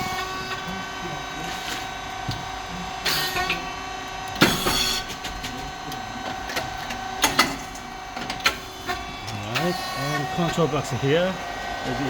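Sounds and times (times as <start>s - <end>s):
machine humming: 0.0s - 12.0s
sharp machine knocks: 4.4s - 5.3s.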